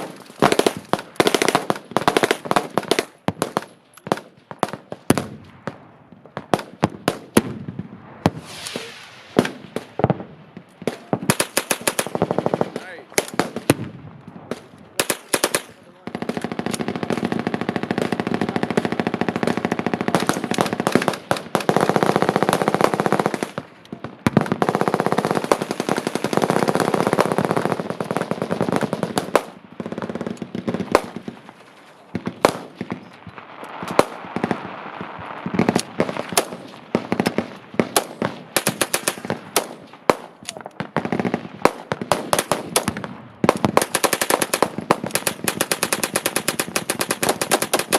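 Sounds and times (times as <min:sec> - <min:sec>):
machine guns firing: 0:00.0 - 0:05.2, 0:10.8 - 0:13.9, 0:14.5 - 0:31.4, 0:35.5 - 0:47.9.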